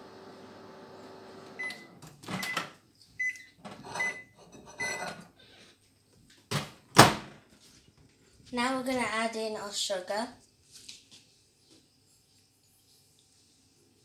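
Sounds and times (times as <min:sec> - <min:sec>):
microwave oven humming: 0:00.0 - 0:02.6.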